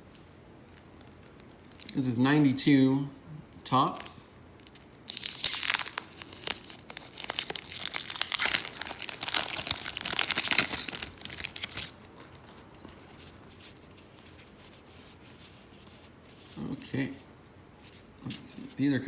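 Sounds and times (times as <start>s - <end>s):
card pack wrapper tearing and crinkling: 3.7s - 12.7s.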